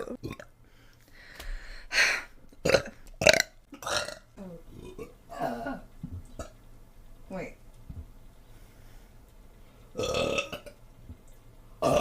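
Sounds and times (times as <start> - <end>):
woman burping: 0.0 - 0.5, 2.6 - 6.5, 10.0 - 10.8.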